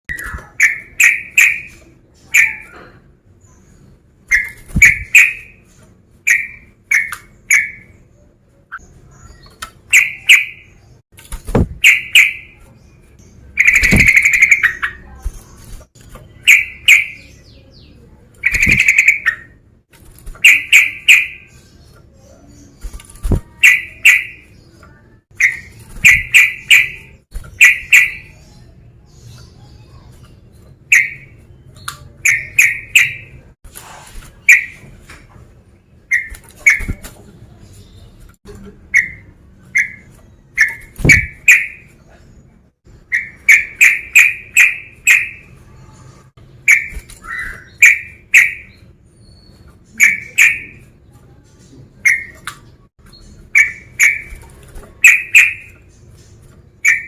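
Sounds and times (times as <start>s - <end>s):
bulbul singing bubbly phrases: 22.3s - 30.0s.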